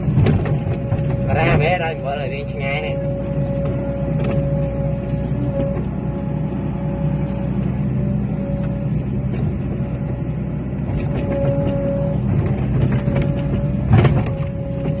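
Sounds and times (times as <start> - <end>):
metal clanks and knocks: 0.0 - 1.7, 11.0 - 15.0
excavator diesel engine running: 0.0 - 15.0
whine: 0.0 - 15.0.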